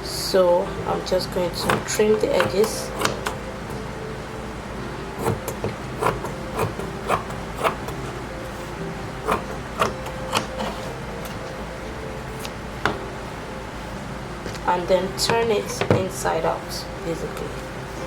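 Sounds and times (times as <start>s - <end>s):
scissors snipping fabric: 1.5s - 3.4s, 5.2s - 8.0s, 9.2s - 10.8s.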